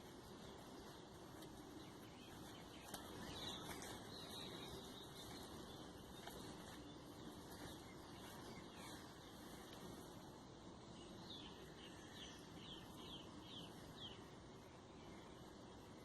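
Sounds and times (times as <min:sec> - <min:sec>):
faint bird chirps: 0:00.0 - 0:10.1.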